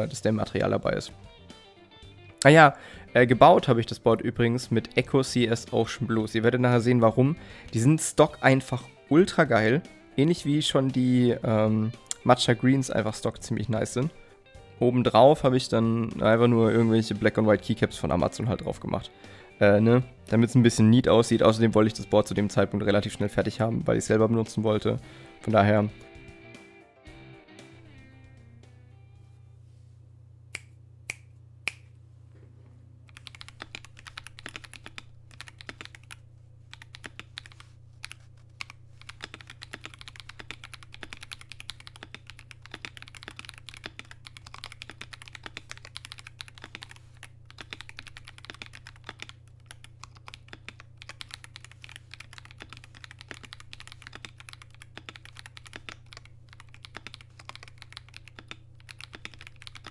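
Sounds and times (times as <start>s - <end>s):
typing on mechanical keyboard: 33.1s - 59.9s.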